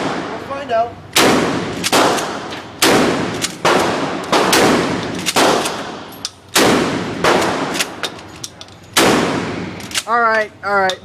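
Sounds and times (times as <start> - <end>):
gunshots with echo: 1.2 - 6.0, 6.6 - 8.0.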